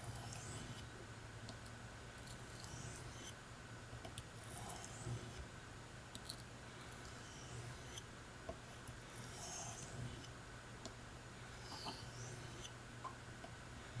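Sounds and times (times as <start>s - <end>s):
knife scraping on whetstone: 0.0s - 0.9s, 2.5s - 3.4s, 4.4s - 5.4s, 7.1s - 8.1s, 9.1s - 10.3s, 11.6s - 12.7s.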